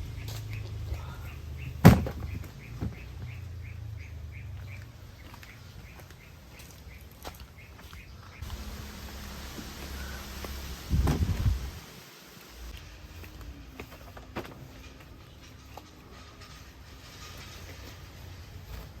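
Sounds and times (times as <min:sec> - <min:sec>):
bird chirping: 0:00.0 - 0:08.7.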